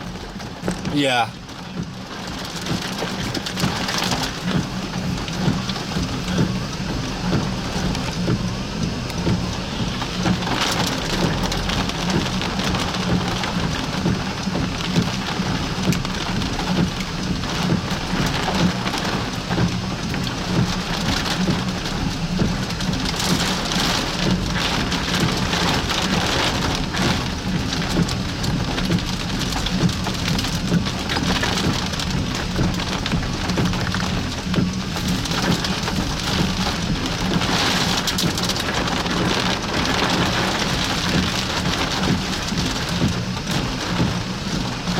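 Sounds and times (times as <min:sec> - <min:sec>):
heavy rain on a vehicle: 0:00.0 - 0:44.9.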